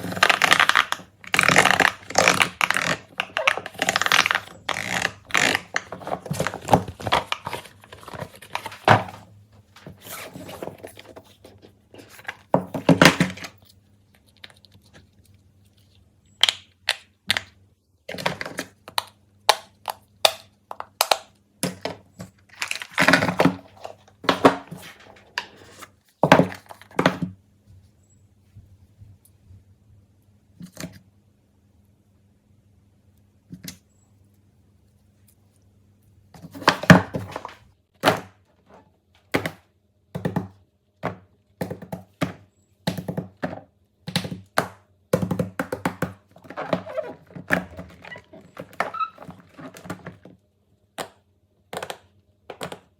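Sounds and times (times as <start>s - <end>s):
plastic rustling and crinkling: 0.0s - 16.0s, 22.1s - 26.9s, 46.4s - 50.4s
plastic toys clicking and thunking: 51.0s - 52.9s.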